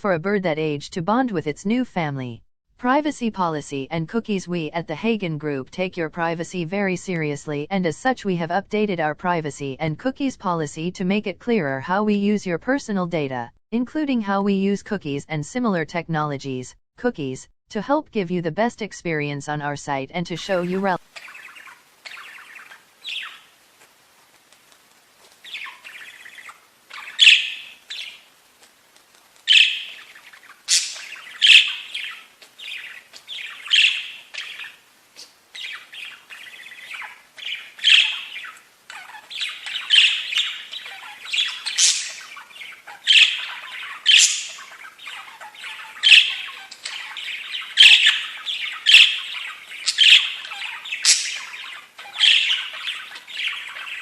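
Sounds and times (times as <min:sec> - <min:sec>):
soft bird chatter: 0:20.5 - 0:54.0
budgerigar chirping and squawking: 0:20.6 - 0:23.6, 0:25.4 - 0:28.3, 0:29.5 - 0:54.0.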